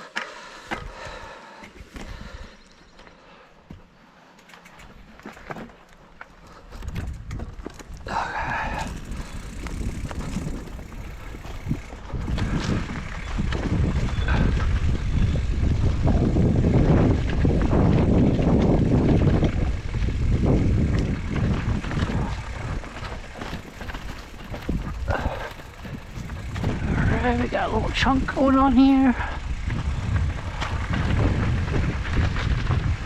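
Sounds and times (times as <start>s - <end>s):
bike rattles and knocks: 0.1s - 33.0s
wind rushing over microphone: 6.6s - 33.0s.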